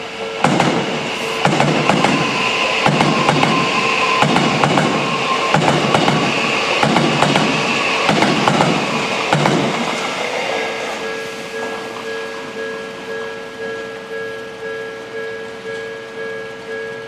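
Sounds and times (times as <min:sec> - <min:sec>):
train wheels clattering over rail joints: 0:00.4 - 0:12.0
level crossing warning bell: 0:10.7 - 0:17.0.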